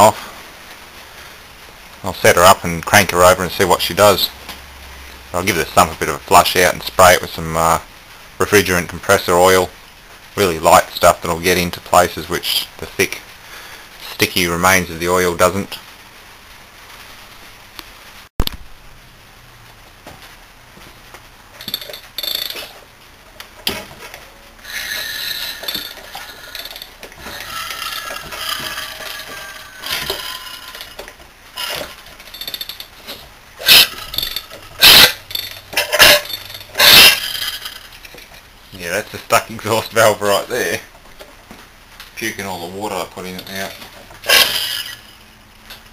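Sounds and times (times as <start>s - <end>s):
loud hissing bursts: 24.6s - 30.8s.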